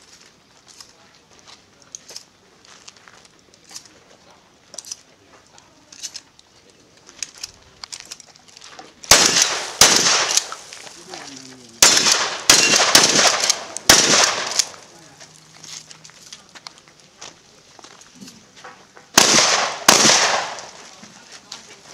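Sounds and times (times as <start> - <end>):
quiet scattered clicks and knocks: 0.6 - 9.6
shotgun shots: 9.1 - 10.7, 11.8 - 14.9, 19.1 - 20.9.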